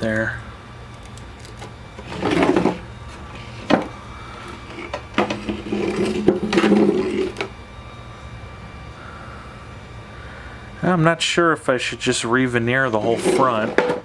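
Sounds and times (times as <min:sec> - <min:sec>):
wood rubbing and scraping: 0:02.0 - 0:07.5, 0:12.9 - 0:14.0.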